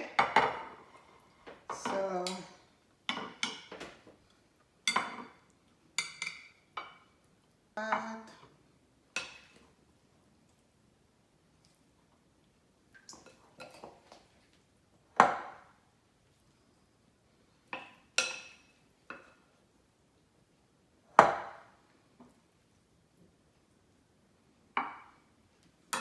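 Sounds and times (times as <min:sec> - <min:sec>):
dishes and utensils clinking: 0:01.7 - 0:04.0, 0:04.8 - 0:07.1, 0:13.1 - 0:14.4, 0:17.8 - 0:19.4.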